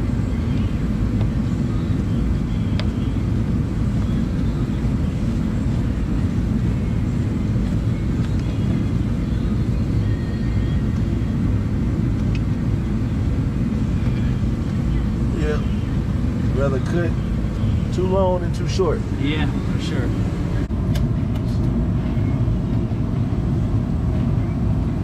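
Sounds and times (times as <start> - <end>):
wind buffeting microphone: 10.8 - 21.2.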